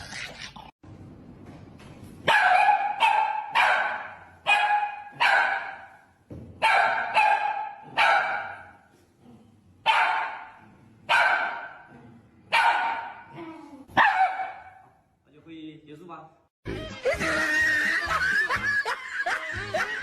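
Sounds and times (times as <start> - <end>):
dog barking: 2.3 - 6.0, 6.6 - 8.9, 9.8 - 11.9, 12.5 - 15.0.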